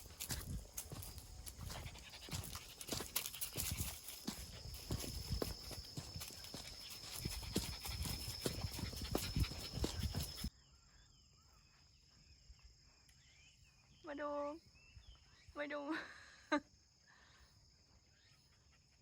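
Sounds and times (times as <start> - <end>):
scuffs and knocks of walking: 0.0 - 10.5
faint chirps: 0.0 - 15.8.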